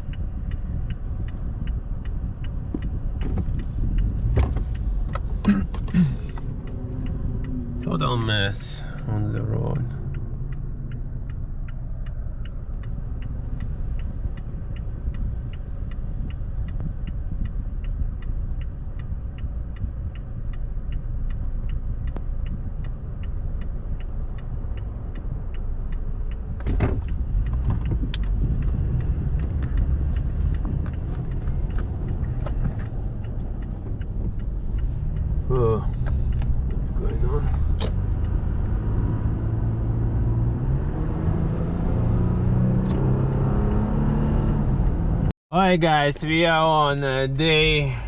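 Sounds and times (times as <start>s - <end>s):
indicator relay ticking: 0.0s - 4.2s, 6.4s - 40.3s
car interior road noise: 0.0s - 48.0s.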